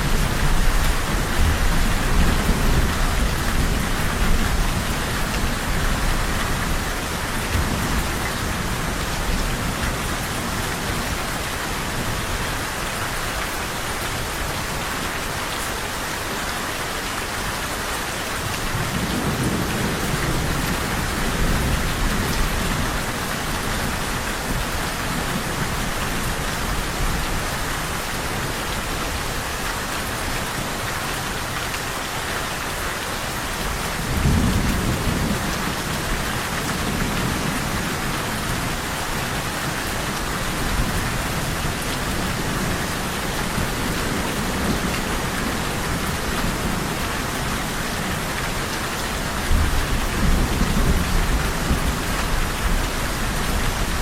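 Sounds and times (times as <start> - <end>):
thunder rumbling: 0.0 - 6.8
heavy rain hissing: 0.0 - 54.0.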